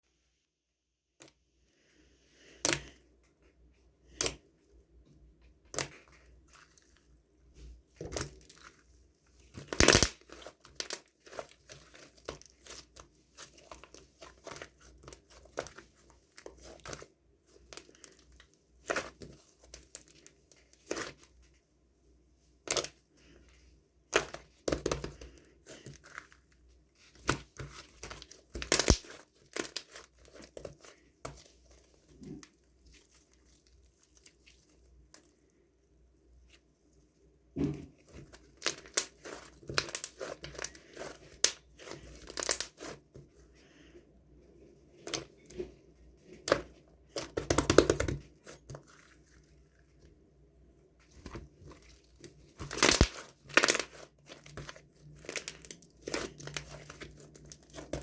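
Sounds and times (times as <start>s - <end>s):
packaging crinkling and tearing: 9.7s - 10.3s, 28.6s - 29.9s, 52.1s - 58.0s.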